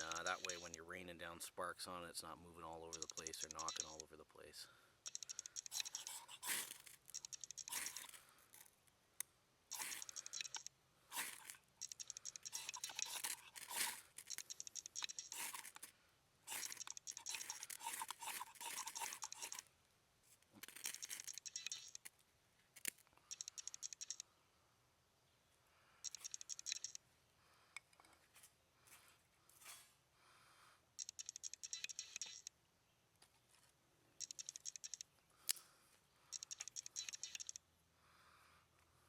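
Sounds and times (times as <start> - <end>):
ferrocerium rod scraping: 0.0 - 0.8, 5.1 - 8.7, 9.7 - 15.9, 16.5 - 19.6, 20.6 - 22.1.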